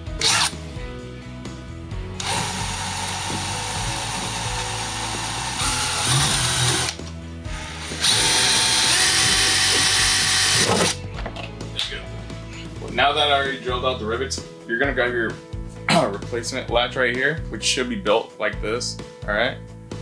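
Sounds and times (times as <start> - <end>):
power drill drilling rivets: 0.2 - 0.6, 2.2 - 11.0.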